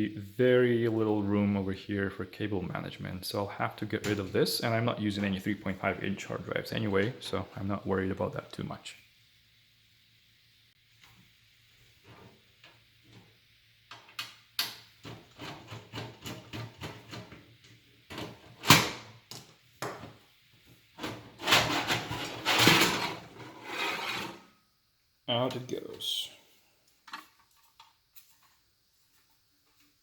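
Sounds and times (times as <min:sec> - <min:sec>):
metal scraping and rubbing: 0:21.0 - 0:24.5
small clicks and knocks: 0:26.9 - 0:28.6.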